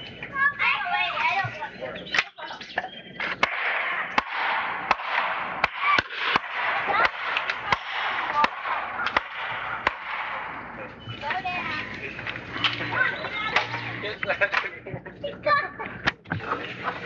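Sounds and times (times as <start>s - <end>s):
hammer blows: 3.1s - 11.2s.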